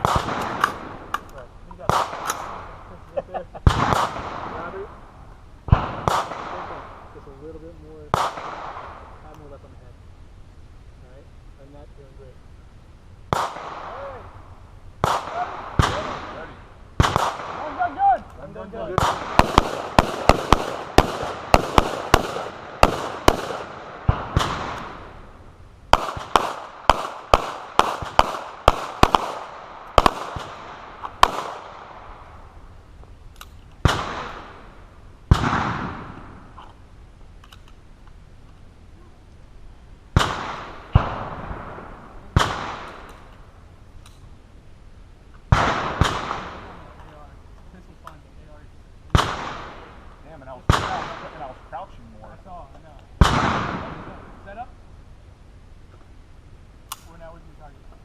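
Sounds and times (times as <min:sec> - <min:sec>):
gunshots: 0:00.0 - 0:03.0, 0:03.6 - 0:04.9, 0:05.7 - 0:07.3, 0:08.1 - 0:09.2, 0:13.3 - 0:14.4, 0:15.0 - 0:25.2, 0:25.9 - 0:32.2, 0:33.8 - 0:34.7, 0:35.3 - 0:36.5, 0:40.1 - 0:43.3, 0:45.5 - 0:47.0, 0:49.1 - 0:51.6, 0:53.2 - 0:54.6.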